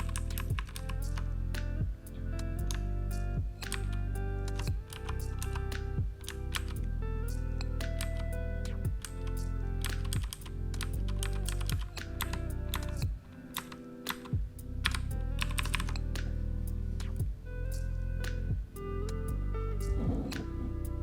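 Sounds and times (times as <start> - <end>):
mechanical keyboard clicks: 0.0 - 1.2, 4.6 - 6.8, 9.0 - 13.0, 13.6 - 16.0
background music with low notes: 0.0 - 21.0.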